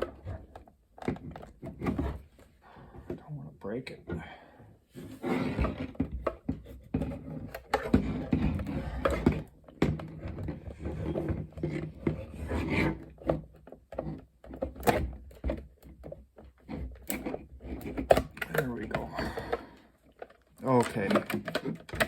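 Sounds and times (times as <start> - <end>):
plastic case scraping: 0.0 - 3.4, 4.9 - 22.0
sharp plastic clicks and knocks: 13.2 - 22.0.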